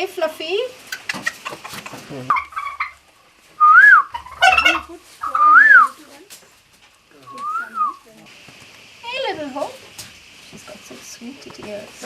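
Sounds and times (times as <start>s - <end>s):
person whistling: 3.6s - 4.1s, 5.4s - 5.9s, 7.3s - 8.0s.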